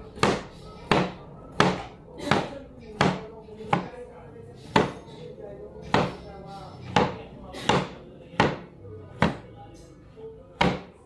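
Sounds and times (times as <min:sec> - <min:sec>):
knife chopping on cutting board: 0:00.2 - 0:03.9, 0:05.8 - 0:06.2, 0:06.9 - 0:08.6, 0:09.2 - 0:09.4, 0:10.6 - 0:11.0.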